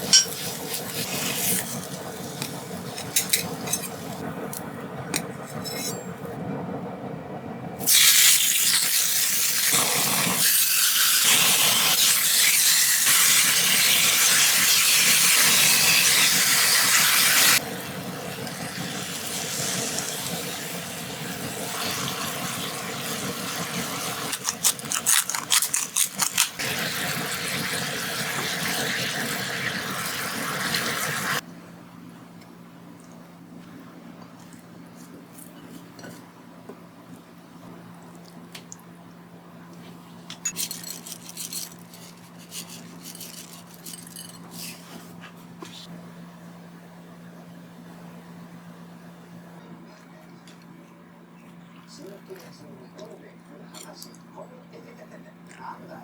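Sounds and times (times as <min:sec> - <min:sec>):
kitchenware clinking: 0:00.0 - 0:00.5, 0:40.3 - 0:44.8
water running from kitchen tap: 0:07.9 - 0:24.6, 0:26.6 - 0:31.4.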